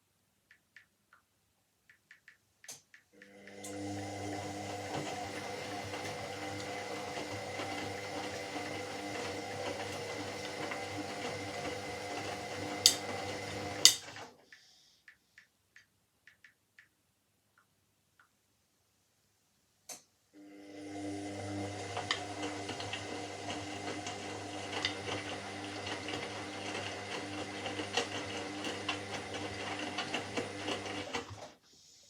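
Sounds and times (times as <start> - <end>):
sharp clicks: 0.4 - 3.7, 13.8 - 18.4
washing machine motor humming: 3.2 - 14.2, 20.4 - 31.5.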